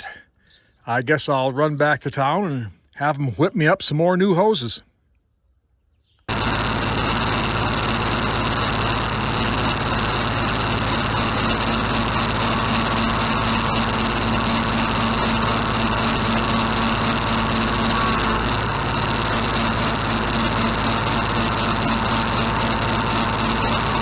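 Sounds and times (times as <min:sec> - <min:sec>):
engine running: 0:06.3 - 0:24.0.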